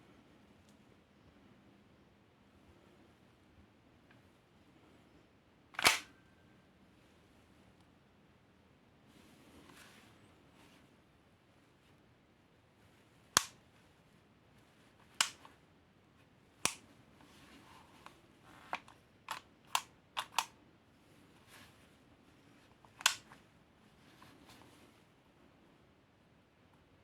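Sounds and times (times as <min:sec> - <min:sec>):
airsoft pistol mechanical clicks: 0:05.8 - 0:06.1, 0:13.4 - 0:13.6, 0:15.1 - 0:15.5, 0:16.6 - 0:16.8, 0:18.7 - 0:20.5, 0:23.0 - 0:23.3.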